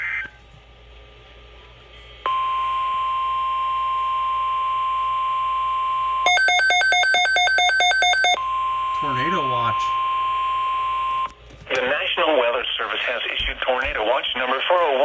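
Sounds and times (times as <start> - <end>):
steady warning alarm tone: 2.3 - 11.3
faint radio hiss: 11.6 - 15.0.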